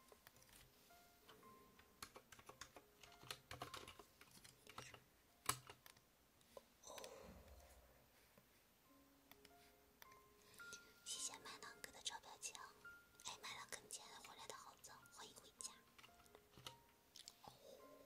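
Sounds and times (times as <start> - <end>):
light keyboard typing clicks: 2.0 - 6.0.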